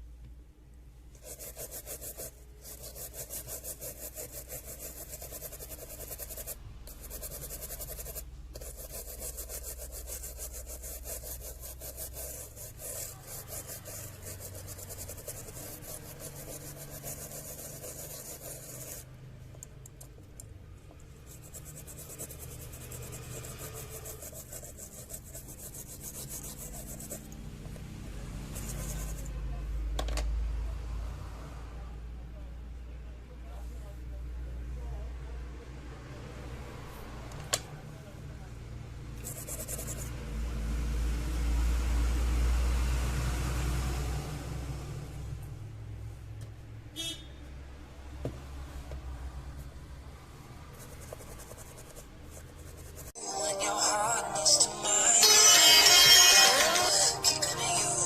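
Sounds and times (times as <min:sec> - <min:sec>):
brush scrubbing circuit board: 0:01.2 - 0:19.1, 0:21.1 - 0:27.3, 0:28.4 - 0:29.3, 0:39.2 - 0:40.2, 0:50.7 - 0:53.2.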